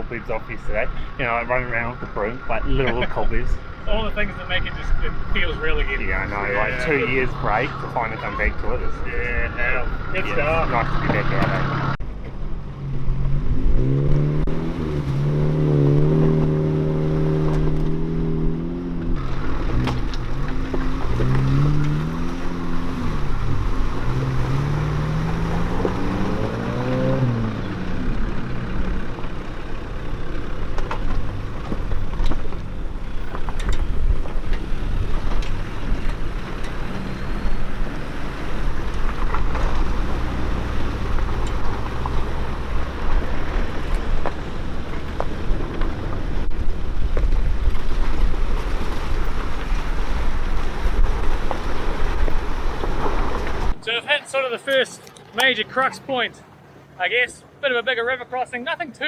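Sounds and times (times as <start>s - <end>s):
vehicle engine revving: 0.0s - 53.8s
tyres rumbling on gravel: 0.0s - 59.0s
wind: 0.0s - 59.0s.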